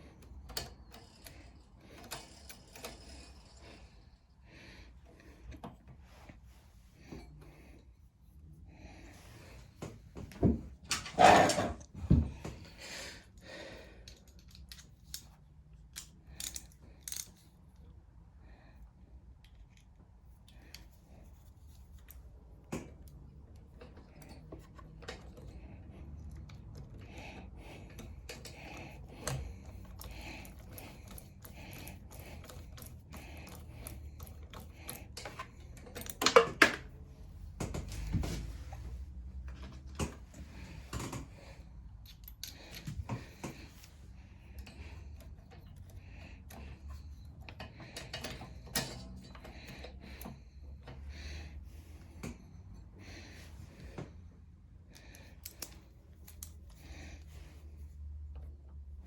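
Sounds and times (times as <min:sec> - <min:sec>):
metal parts and tools clattering: 0:14.0 - 0:17.6, 0:26.2 - 0:37.0, 0:39.5 - 0:51.1, 0:55.2 - 0:57.5.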